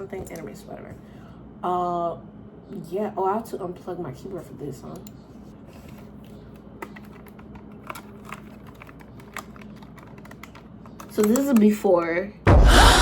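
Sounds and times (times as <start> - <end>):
keyboard keys clicking: 6.8 - 12.0.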